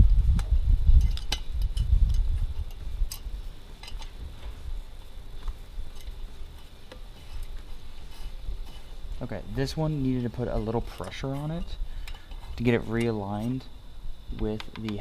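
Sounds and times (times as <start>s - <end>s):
low rumbling handling noise: 0.0s - 15.0s.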